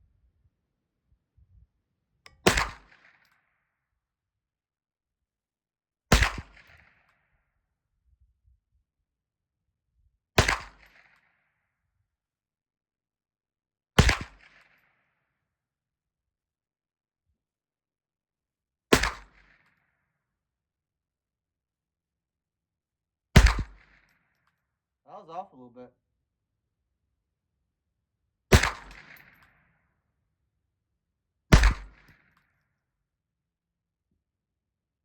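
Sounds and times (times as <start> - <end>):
suppressed pistol shots: 2.3 - 2.9.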